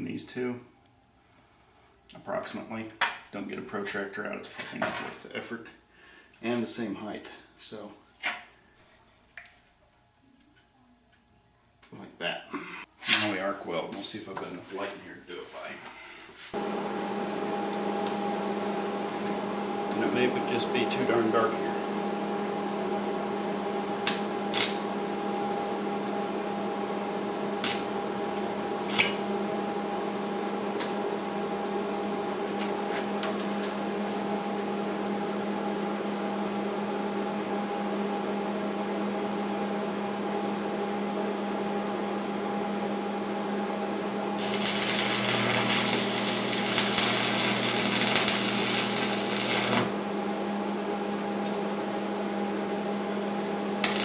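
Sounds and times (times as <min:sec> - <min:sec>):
steady hum: 0:11.9 - 0:54.0
welding arc crackling: 0:24.0 - 0:24.9, 0:27.5 - 0:29.3, 0:44.4 - 0:50.0, 0:53.8 - 0:54.0.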